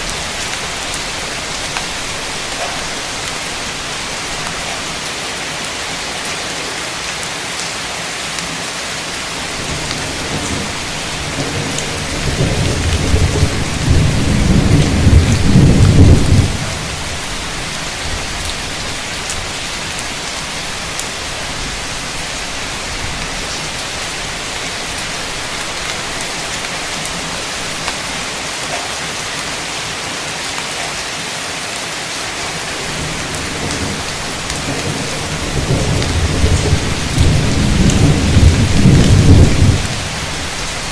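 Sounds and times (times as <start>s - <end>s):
heavy rain: 0.0s - 40.9s
thunder rumbling: 9.4s - 20.0s, 32.6s - 40.9s.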